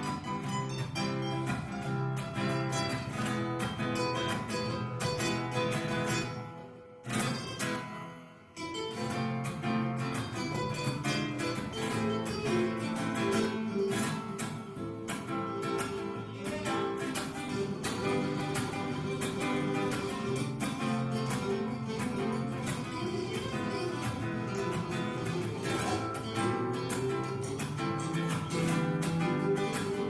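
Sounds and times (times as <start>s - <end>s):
acoustic guitar plucking: 0.0s - 30.0s.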